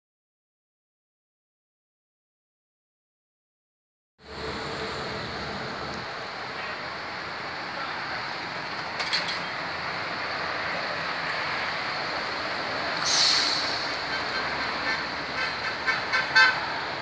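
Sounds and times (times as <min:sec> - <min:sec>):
truck and bus noise: 0:04.2 - 0:17.0
short loud hiss: 0:13.0 - 0:14.0.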